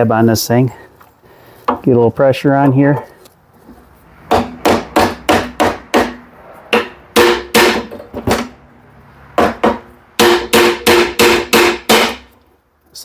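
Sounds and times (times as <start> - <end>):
hammer striking metal ringing: 4.3 - 8.5.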